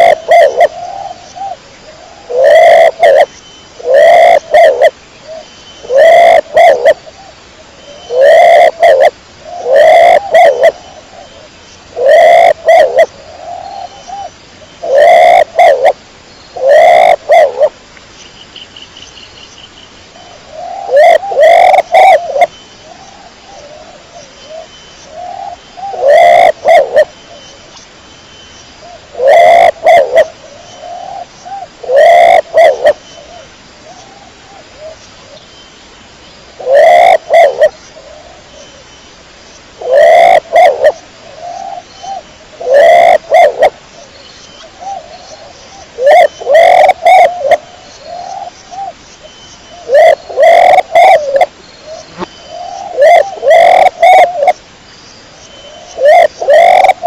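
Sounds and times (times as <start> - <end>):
pigeon cooing: 0.0 - 4.9, 5.9 - 7.0, 8.0 - 11.2, 12.0 - 16.0, 16.6 - 17.7, 20.5 - 22.5, 25.2 - 27.1, 29.1 - 33.0, 36.6 - 38.3, 39.8 - 41.8, 42.6 - 43.7, 46.0 - 48.9, 49.8 - 51.5, 52.6 - 54.6, 55.9 - 57.0.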